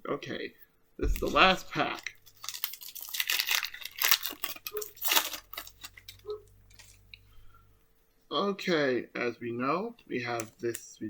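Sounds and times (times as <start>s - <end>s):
foil wrapper crinkling and tearing: 1.2s - 7.1s.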